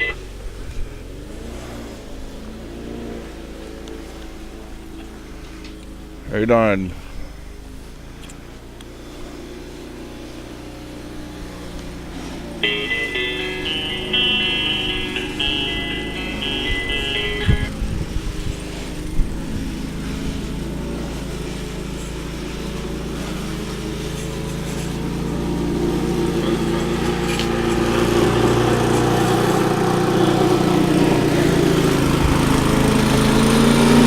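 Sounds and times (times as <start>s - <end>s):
lawn mower engine running: 12.6s - 34.0s.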